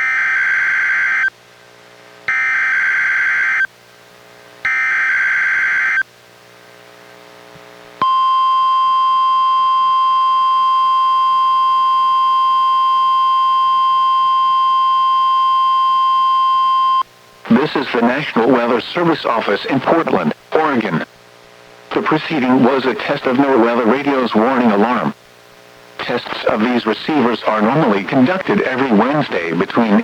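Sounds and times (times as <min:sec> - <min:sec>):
steady alarm tone: 0:02.3 - 0:03.7, 0:04.7 - 0:06.0, 0:08.0 - 0:18.8.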